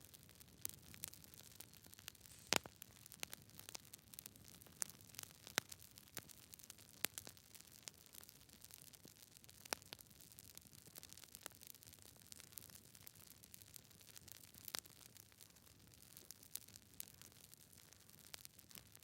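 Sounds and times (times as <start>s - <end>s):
faint low hiss: 0.0s - 11.5s
wood fire crackling: 0.0s - 19.0s.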